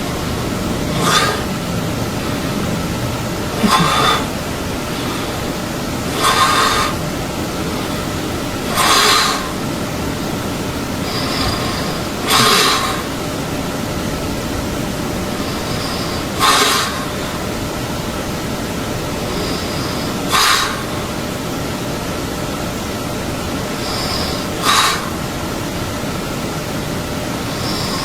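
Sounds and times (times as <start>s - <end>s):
person snoring: 0.0s - 1.7s, 3.5s - 5.4s, 6.0s - 7.0s, 8.6s - 9.6s, 11.0s - 13.2s, 23.8s - 25.2s
steady background hiss: 0.0s - 28.0s.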